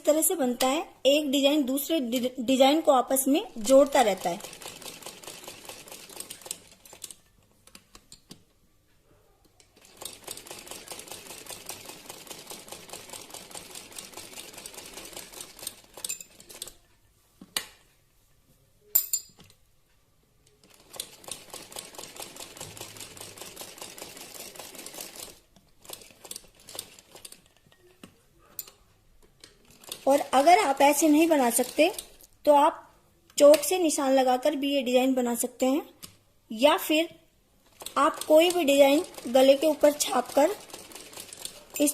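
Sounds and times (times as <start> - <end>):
sewing machine stitching: 3.7 - 7.2, 9.8 - 16.8, 20.6 - 27.4, 29.5 - 32.2, 37.7 - 41.9.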